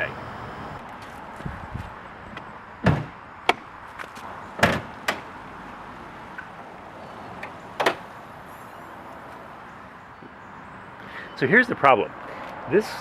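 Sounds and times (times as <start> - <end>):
sharp clunks and knocks: 2.4 - 5.3, 7.4 - 8.1.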